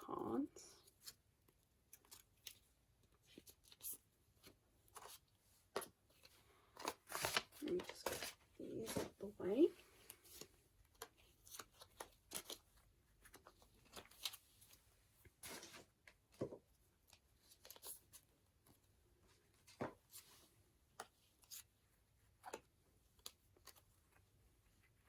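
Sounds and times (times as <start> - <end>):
plastic packaging rustling: 6.8 - 9.3.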